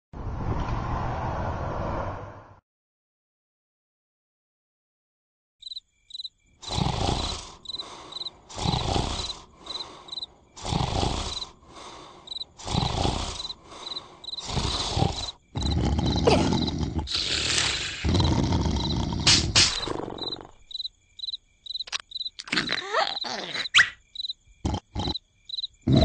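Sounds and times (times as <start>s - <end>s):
cricket chirps: 5.6s - 26.0s
cartoon snoring: 6.6s - 20.7s, 22.4s - 24.0s, 24.6s - 25.2s.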